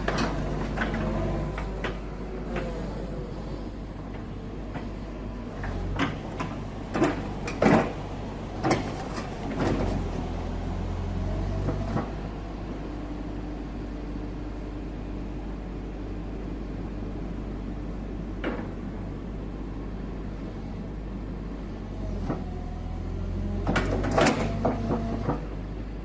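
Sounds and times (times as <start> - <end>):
faint hydraulic whine: 0.0 - 13.4, 18.6 - 25.6
excavator engine hum: 0.0 - 26.0.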